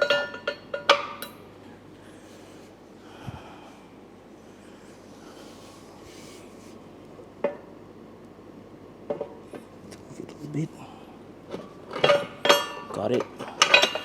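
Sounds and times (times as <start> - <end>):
person breathing faintly: 2.0 - 6.8.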